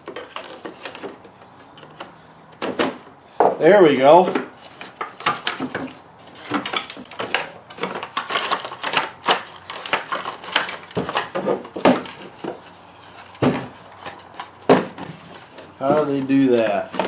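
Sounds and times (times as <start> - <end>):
plastic parts clicking and scraping: 0.0 - 17.0.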